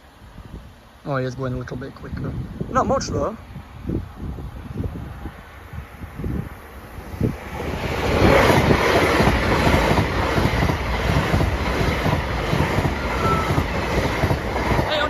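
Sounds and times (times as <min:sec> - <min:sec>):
train wheels rumbling on rails: 0:03.9 - 0:15.0.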